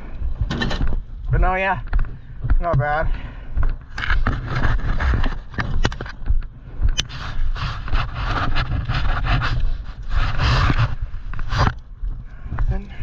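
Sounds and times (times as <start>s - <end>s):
person breathing hard: 2.4s - 3.9s.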